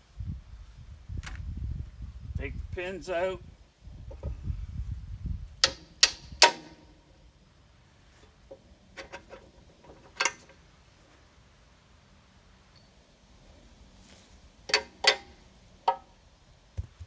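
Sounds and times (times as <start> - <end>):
metallic clanks on steel pins: 14.7 - 16.0.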